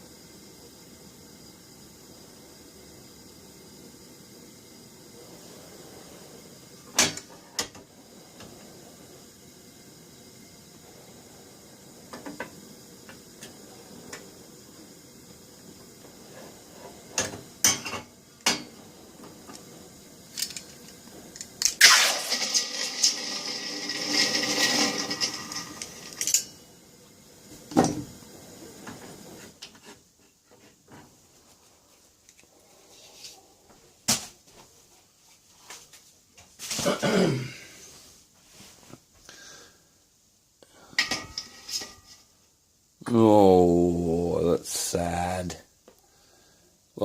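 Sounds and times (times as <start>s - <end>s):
hot metal sizzling in water: 0.0s - 30.1s, 41.0s - 42.4s.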